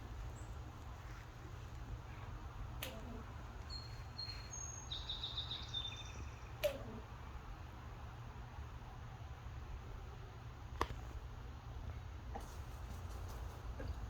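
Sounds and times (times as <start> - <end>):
steady low hum: 0.0 - 14.0
high bird chirps and trill: 3.7 - 6.6.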